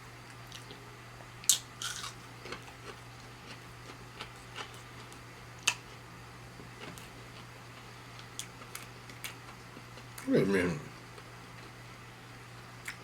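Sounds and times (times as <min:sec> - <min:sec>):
steady low hum: 0:00.0 - 0:13.0
chewing crunches and mouth clicks: 0:00.3 - 0:06.0, 0:06.8 - 0:10.3, 0:11.1 - 0:11.8, 0:12.5 - 0:13.0.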